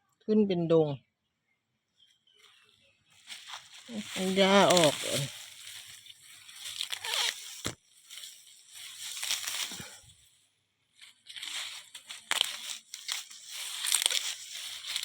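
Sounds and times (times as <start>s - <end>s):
grass being pulled up: 3.2s - 10.3s, 11.0s - 15.0s.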